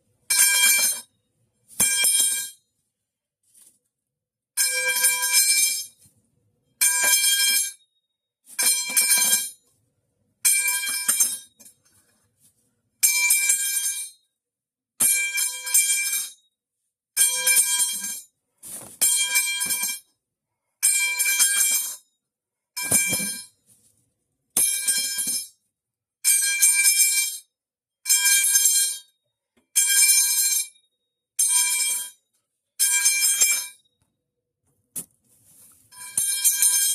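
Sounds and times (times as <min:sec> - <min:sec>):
metal pipe clanging and ringing: 0:00.3 - 0:01.1, 0:01.8 - 0:02.6, 0:04.6 - 0:06.0, 0:06.8 - 0:07.8, 0:08.6 - 0:09.6, 0:10.5 - 0:12.0, 0:13.0 - 0:14.2, 0:15.0 - 0:16.5, 0:17.2 - 0:18.3, 0:19.0 - 0:20.1, 0:20.9 - 0:22.0, 0:22.8 - 0:23.6, 0:24.6 - 0:25.6, 0:29.8 - 0:30.8, 0:31.4 - 0:32.2, 0:32.8 - 0:33.9, 0:35.9 - 0:36.9.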